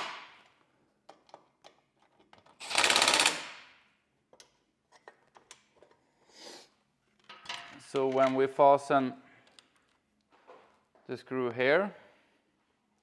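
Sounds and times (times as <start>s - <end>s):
impact driver hammering: 2.6s - 3.7s.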